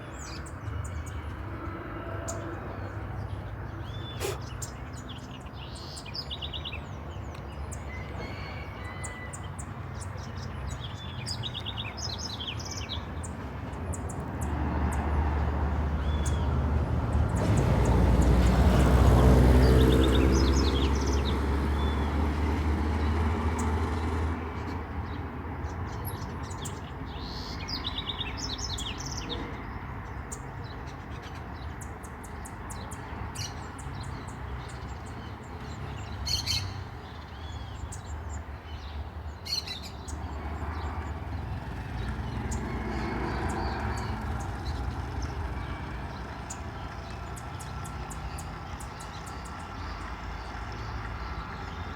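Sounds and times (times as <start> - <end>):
small birds chirping: 0.0 - 8.6, 25.0 - 51.9.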